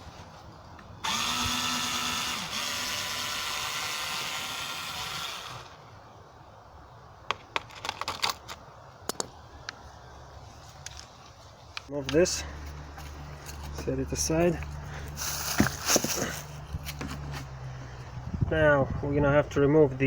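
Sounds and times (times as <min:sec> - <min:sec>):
cordless drill running: 0:01.0 - 0:05.8
clicks and knocks of parts: 0:07.3 - 0:09.8.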